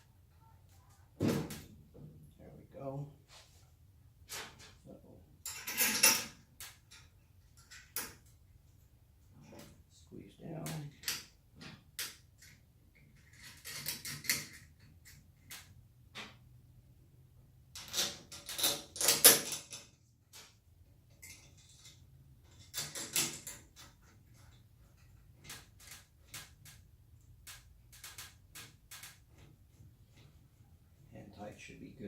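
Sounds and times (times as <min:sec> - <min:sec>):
clattering and rustling: 0:03.3 - 0:09.8, 0:17.7 - 0:31.0.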